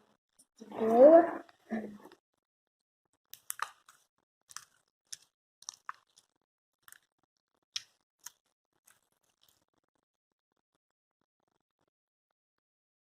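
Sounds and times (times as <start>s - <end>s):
slime squelching by hand: 3.3s - 7.1s.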